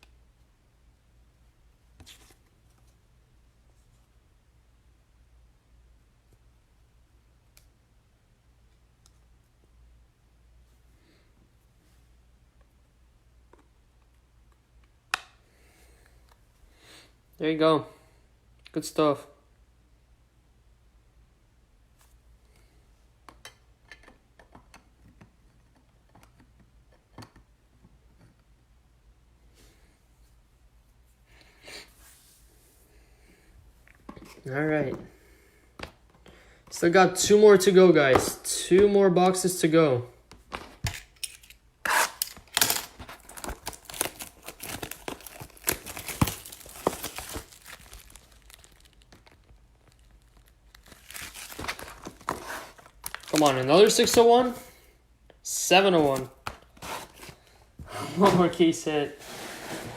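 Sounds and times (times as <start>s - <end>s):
plastic wrapping tearing and crinkling: 41.9s - 54.2s.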